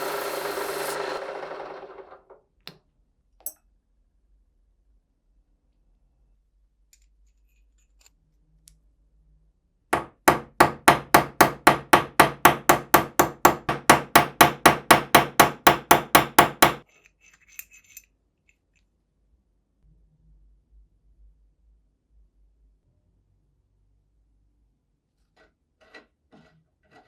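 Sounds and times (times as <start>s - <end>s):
hammer striking metal: 10.0s - 16.8s.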